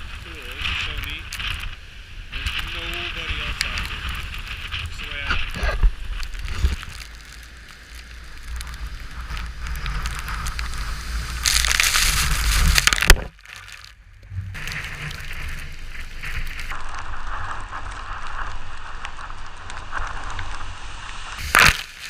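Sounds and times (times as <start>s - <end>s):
wind buffeting microphone: 0.0s - 7.0s
rough lake water rushing: 0.0s - 16.8s.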